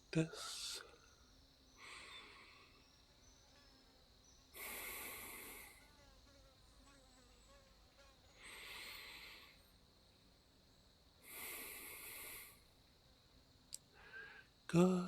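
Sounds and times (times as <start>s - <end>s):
insect chirps: 0.0s - 15.0s
insect trill: 0.0s - 15.0s
slow breaths close to microphone: 1.7s - 3.0s, 4.6s - 5.9s, 8.3s - 9.8s, 11.2s - 12.7s, 13.9s - 14.6s.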